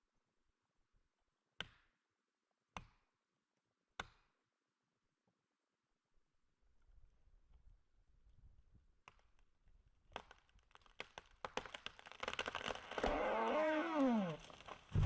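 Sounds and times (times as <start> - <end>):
wood cracking and snapping: 9.1 - 15.0
tree trunk creaking groan: 10.8 - 15.0.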